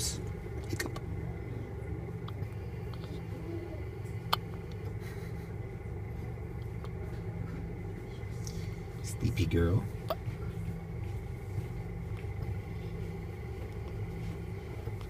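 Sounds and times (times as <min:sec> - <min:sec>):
steady low rumble: 0:00.0 - 0:15.0
baby hiccupping: 0:02.3 - 0:04.6.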